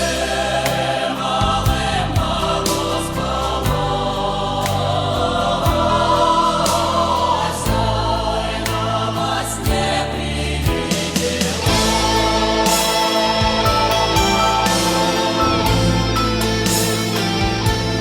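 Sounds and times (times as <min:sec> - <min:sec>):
choir-like voices over chords: 0:00.0 - 0:18.0
steady beat: 0:10.7 - 0:18.0.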